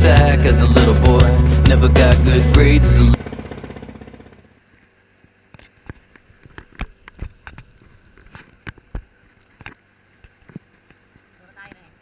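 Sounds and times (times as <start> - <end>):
background music: 0.0 - 3.2.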